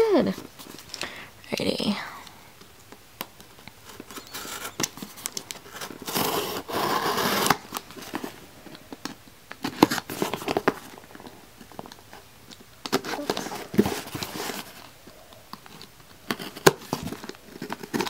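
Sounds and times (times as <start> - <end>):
packaging rustles: 3.4 - 18.0
packaging tearing: 3.9 - 7.9.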